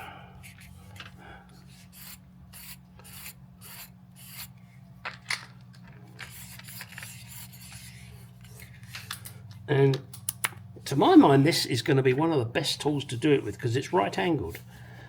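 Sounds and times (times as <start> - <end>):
low background hum: 0.0 - 15.0
rasping rubbing strokes: 1.6 - 4.6.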